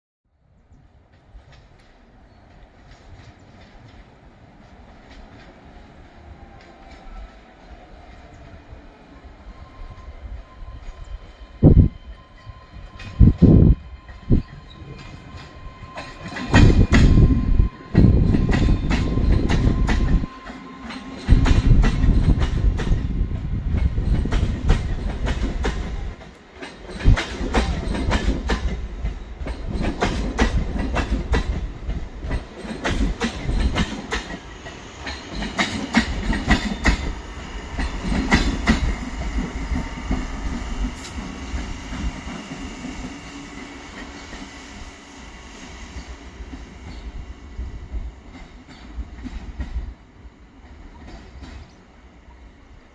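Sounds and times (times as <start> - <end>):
train rumbling: 0.5 - 52.9
train wheels clacking over rail joints: 14.1 - 17.3, 17.9 - 44.9, 48.2 - 50.0, 50.6 - 51.8.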